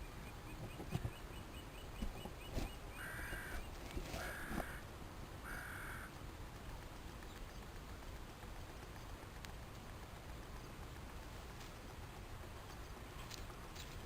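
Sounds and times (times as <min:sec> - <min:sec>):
drawn-out animal calls: 0:02.4 - 0:06.2.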